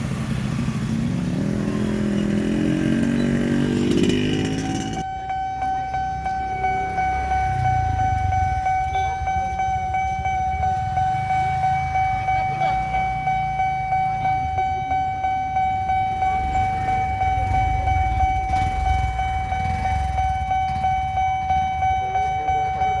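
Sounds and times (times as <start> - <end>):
vehicle engine accelerating: 0.0 - 5.1, 6.2 - 15.0, 15.6 - 23.0
level crossing alarm pulsing: 0.6 - 23.0.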